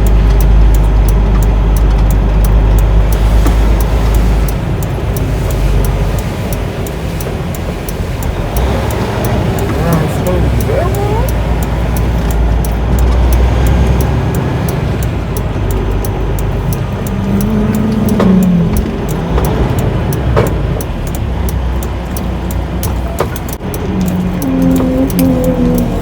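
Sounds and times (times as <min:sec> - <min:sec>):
diesel truck engine rumbling: 0:00.0 - 0:26.0.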